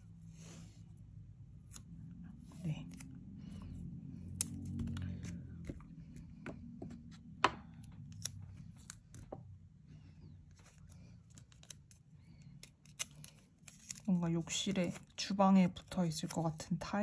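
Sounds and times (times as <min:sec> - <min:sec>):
hands handling tape and tools: 0:10.5 - 0:15.1.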